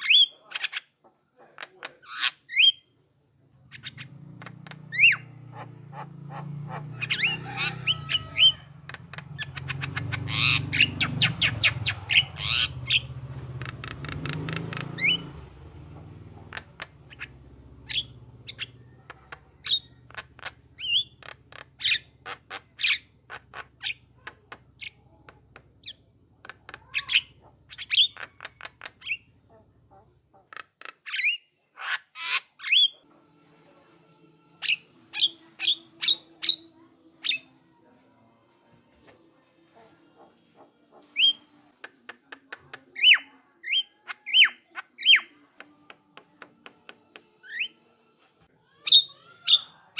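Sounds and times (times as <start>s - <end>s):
bird calling with whistles: 0.0s - 0.9s, 2.1s - 2.8s, 4.9s - 8.6s, 9.4s - 13.1s, 14.7s - 15.4s, 16.4s - 18.9s, 19.6s - 25.1s, 26.8s - 30.2s, 48.9s - 49.8s.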